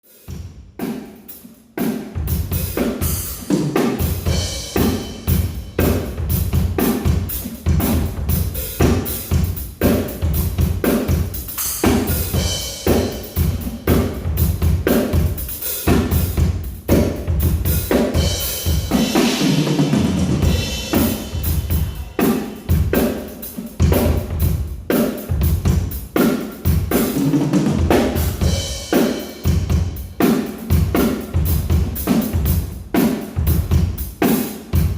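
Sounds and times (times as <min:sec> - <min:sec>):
drum kit groove: 0:00.0 - 0:34.9.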